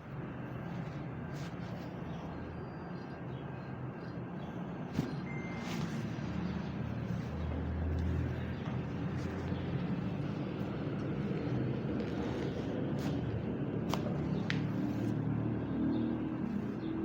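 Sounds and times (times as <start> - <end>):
motor vehicle engine rumble: 4.0 - 17.0.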